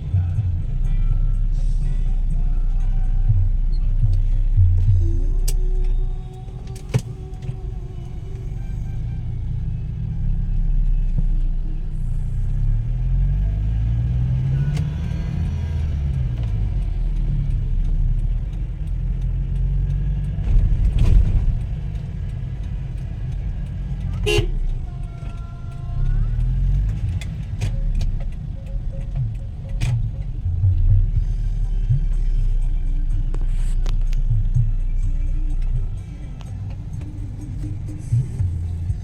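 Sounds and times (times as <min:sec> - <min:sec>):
traffic engines rumbling: 0:00.0 - 0:39.0
car horn honking: 0:24.0 - 0:25.0.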